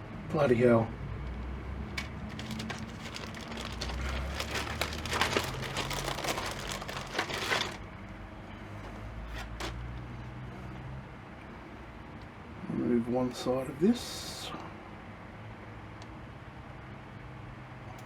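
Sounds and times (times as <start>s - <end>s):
plastic lens crinkling: 1.8s - 7.8s.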